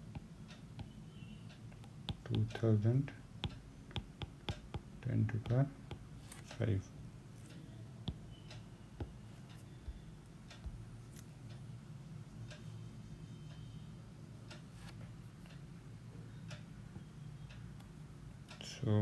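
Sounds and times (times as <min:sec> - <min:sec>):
pen tapping on paper: 0:00.0 - 0:01.0, 0:01.8 - 0:02.6, 0:03.4 - 0:06.5, 0:09.8 - 0:10.9.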